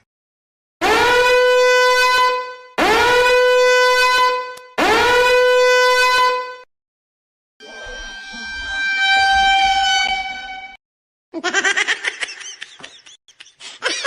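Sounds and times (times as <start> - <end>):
horn blasts sliding up: 7.6 - 10.8.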